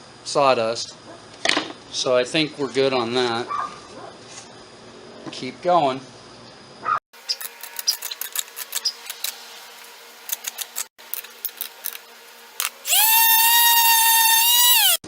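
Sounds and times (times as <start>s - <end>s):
electric palm sander whining: 12.8s - 15.0s.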